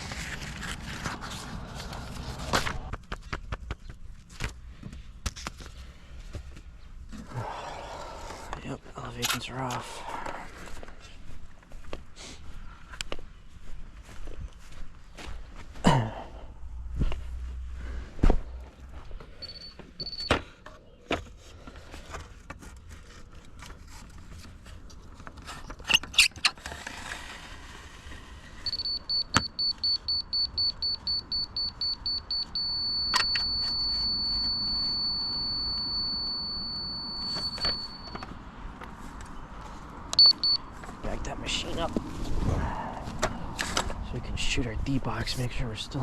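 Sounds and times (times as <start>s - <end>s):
receiver beeping: 19.4s - 20.4s, 28.7s - 38.2s, 40.2s - 40.6s.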